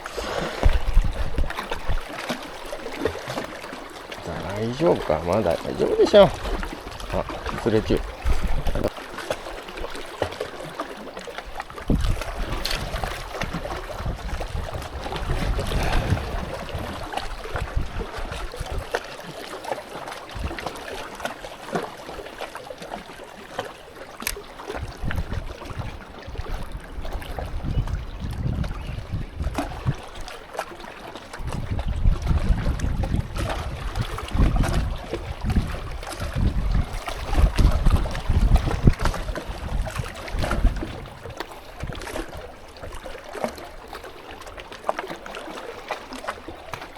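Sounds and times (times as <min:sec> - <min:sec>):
wind buffeting microphone: 0:00.0 - 0:02.3, 0:04.2 - 0:08.9, 0:11.6 - 0:19.0, 0:20.4 - 0:20.8, 0:24.2 - 0:30.3, 0:31.4 - 0:43.0
rushing water: 0:00.0 - 0:46.9.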